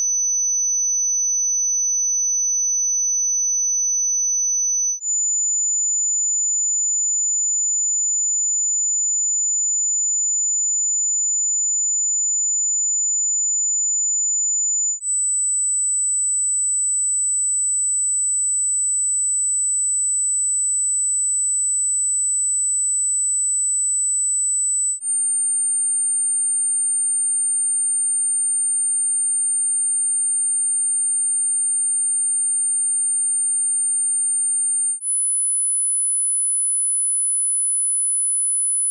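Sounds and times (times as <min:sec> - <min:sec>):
pure sine test tones: 0:25.1 - 0:35.5.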